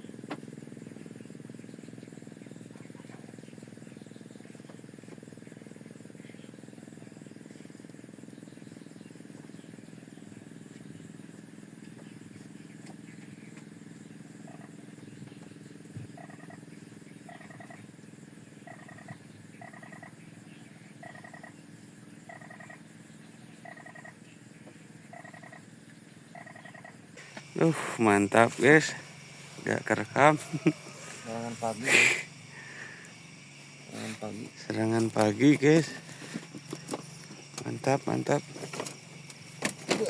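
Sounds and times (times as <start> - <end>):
trilled animal call: 14.4 - 14.8, 16.1 - 17.9, 18.6 - 21.6, 22.2 - 22.8, 23.5 - 24.2, 25.0 - 25.7, 26.3 - 34.9
low hum: 27.0 - 39.8.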